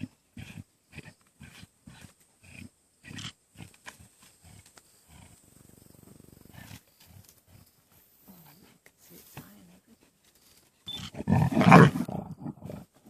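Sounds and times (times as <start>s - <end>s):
lions growling and snarling: 0.0s - 8.1s, 10.9s - 13.0s.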